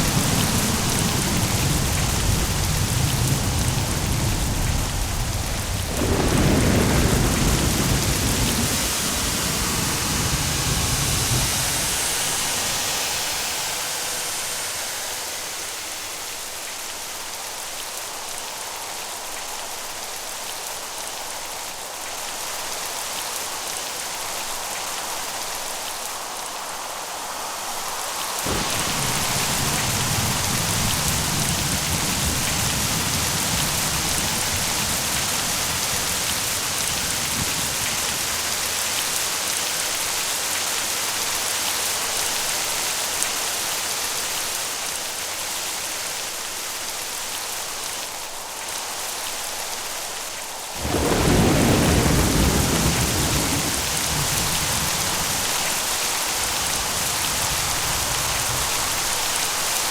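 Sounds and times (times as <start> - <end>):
low thunder rumble: 0.0 - 14.3, 28.5 - 39.1, 50.8 - 59.4
steady rain falling: 0.0 - 59.9.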